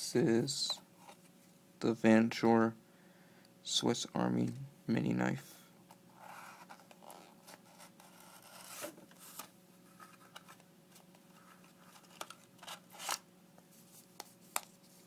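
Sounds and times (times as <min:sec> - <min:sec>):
packaging rustling and scraping: 0:06.4 - 0:13.2.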